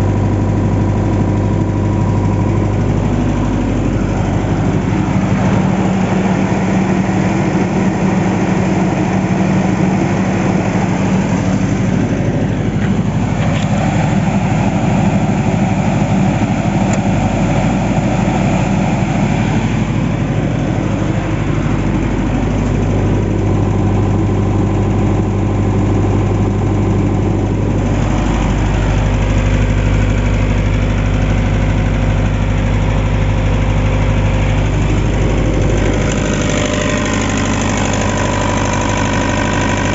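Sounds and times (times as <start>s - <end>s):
diesel generator running: 0.0s - 39.9s.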